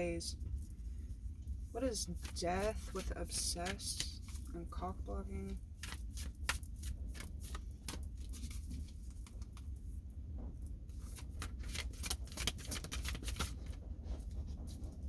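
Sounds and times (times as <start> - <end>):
cards being shuffled: 2.1 - 4.5, 5.5 - 9.6, 11.0 - 13.8.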